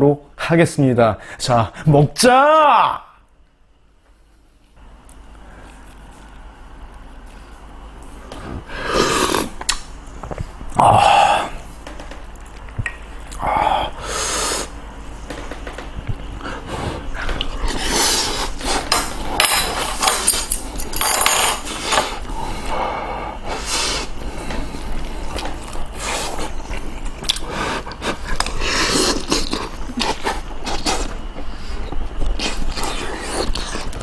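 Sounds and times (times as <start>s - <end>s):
slurping: 8.6s - 9.8s, 26.0s - 34.0s
chewing: 25.0s - 34.0s.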